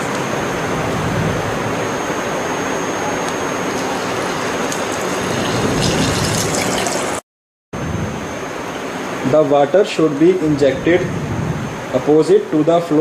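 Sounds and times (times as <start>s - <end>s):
faint high whine: 0.0s - 7.2s, 7.8s - 13.0s.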